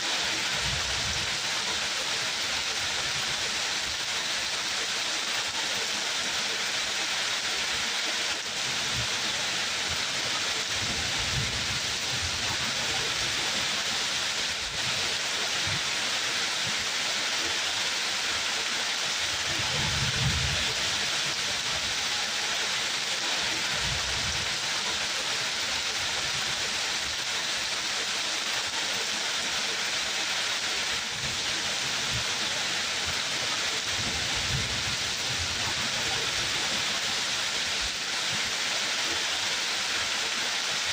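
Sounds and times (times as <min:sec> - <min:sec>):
steady rain falling: 0:00.0 - 0:40.9.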